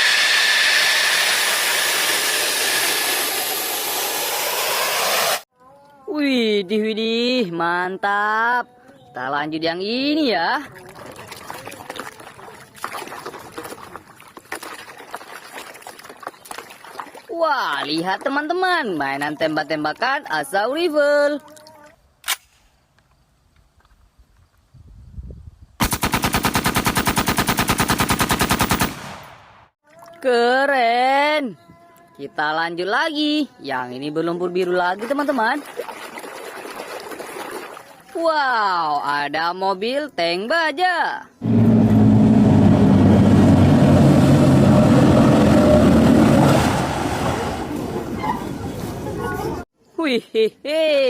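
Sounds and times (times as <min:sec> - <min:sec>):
engine-like hum: 0:00.0 - 0:05.4, 0:41.4 - 0:49.6
rushing hiss: 0:00.0 - 0:05.5
single click: 0:22.2 - 0:23.1.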